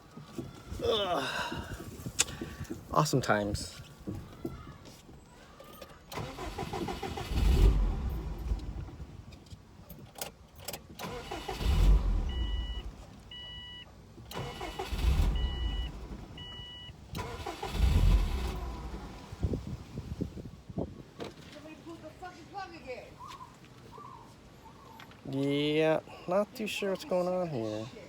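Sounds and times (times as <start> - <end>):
car starter cranking: 5.6 - 9.1, 10.1 - 19.7.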